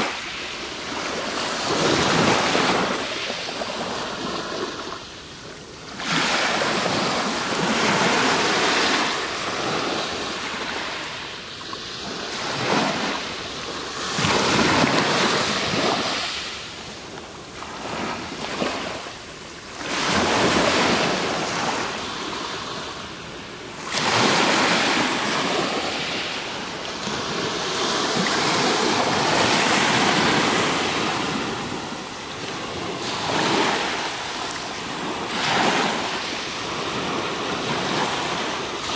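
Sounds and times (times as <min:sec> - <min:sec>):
waves breaking on pebble beach: 0:23.8 - 0:38.9.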